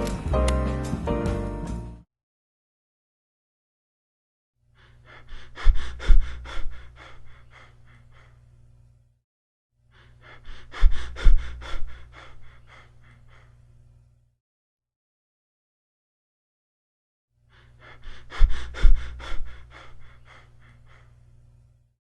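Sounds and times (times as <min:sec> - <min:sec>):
breath sounds through stethoscope: 0:04.8 - 0:08.6, 0:09.9 - 0:13.8, 0:17.5 - 0:21.7.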